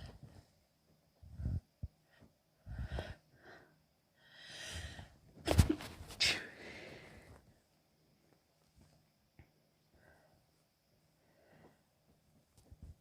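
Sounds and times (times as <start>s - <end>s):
exhale: 1.3s - 5.2s, 6.2s - 7.4s, 11.2s - 11.8s.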